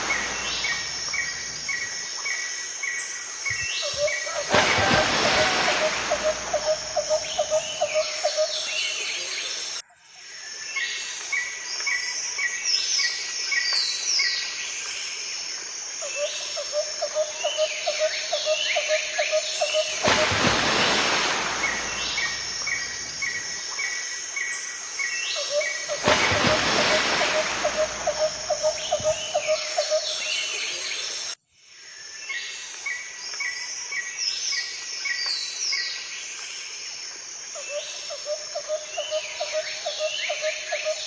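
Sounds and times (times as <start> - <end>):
bird sweeping calls: 0.0 - 1.8, 3.8 - 8.2, 19.6 - 23.4, 25.5 - 30.0
birds chirping: 0.0 - 1.9, 3.8 - 8.1, 19.6 - 23.5, 25.8 - 30.5
steady background hiss: 0.0 - 9.8, 11.6 - 31.4.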